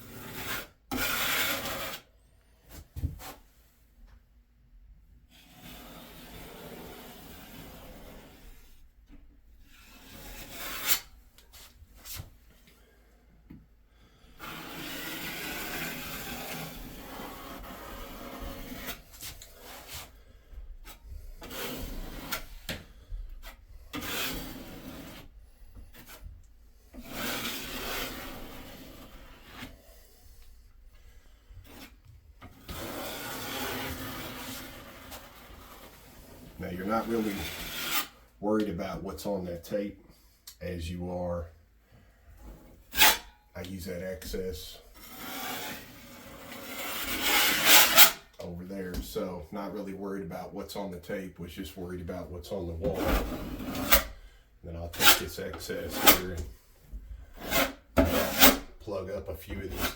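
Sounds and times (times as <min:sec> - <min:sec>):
blade scraping sealant on wall: 0:00.0 - 0:02.1, 0:05.3 - 0:08.8, 0:09.7 - 0:12.9, 0:13.9 - 0:38.2, 0:42.4 - 0:48.4, 0:52.8 - 0:59.9.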